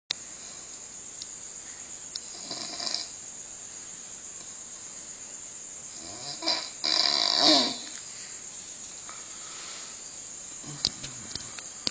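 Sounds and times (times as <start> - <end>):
faint hiss: 0.1 - 11.9
man snoring: 2.3 - 3.2, 5.9 - 7.9.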